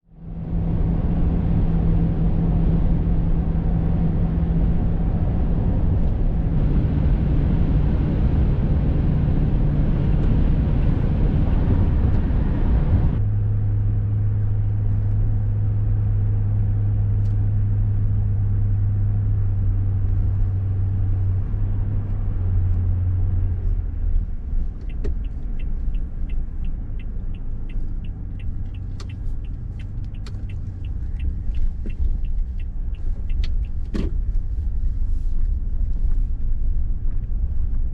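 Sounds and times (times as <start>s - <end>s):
car engine and road drone: 0.0s - 37.9s.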